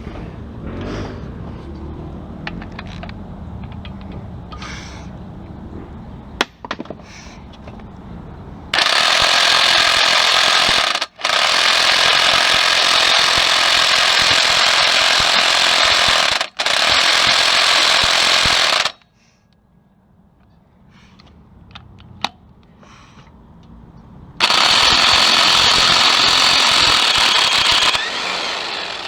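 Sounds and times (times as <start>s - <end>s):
power tool hammering rattle: 8.8s - 19.0s, 24.4s - 29.0s.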